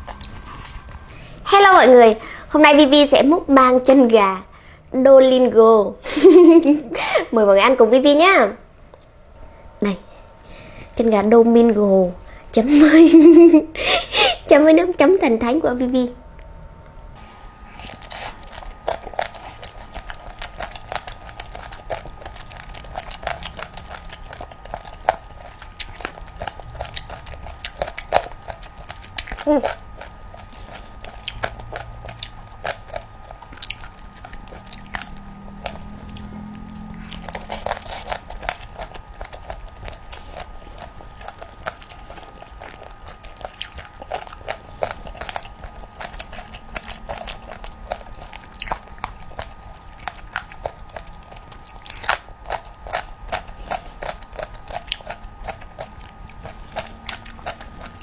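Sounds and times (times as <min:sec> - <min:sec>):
wet chewing and crunching: 0:00.0 - 0:02.0, 0:17.6 - 0:58.0.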